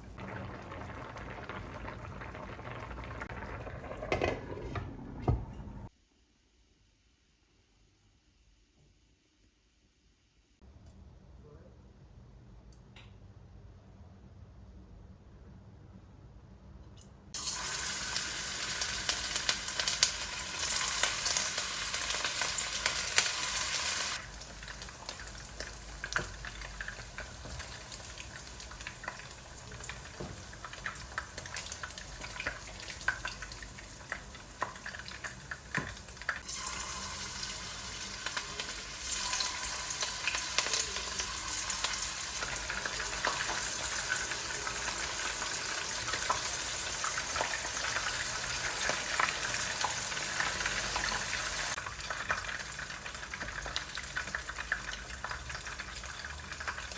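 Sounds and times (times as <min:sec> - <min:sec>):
food sizzling in a frying pan: 0:17.4 - 0:56.9.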